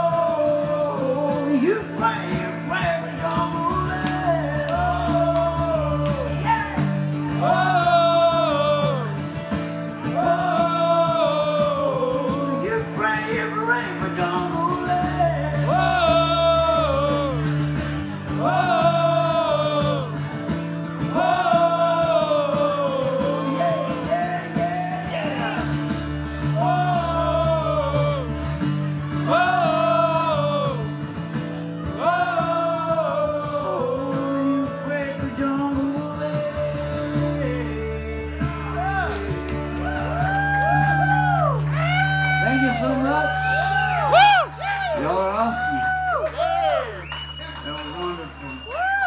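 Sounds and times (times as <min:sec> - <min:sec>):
man singing: 0:00.0 - 0:09.2, 0:10.0 - 0:17.6, 0:18.4 - 0:20.2, 0:21.1 - 0:25.7, 0:26.5 - 0:28.4, 0:29.2 - 0:31.0, 0:32.0 - 0:39.4
guitar accompaniment: 0:00.0 - 0:49.0.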